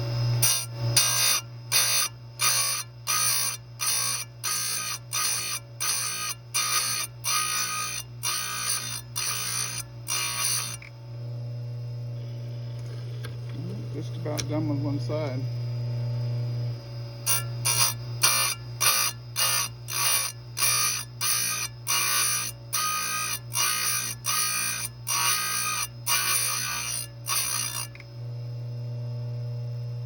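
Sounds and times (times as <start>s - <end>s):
motor hum: 0.0s - 30.0s
chain grinder rasping: 0.4s - 10.9s, 17.3s - 28.0s.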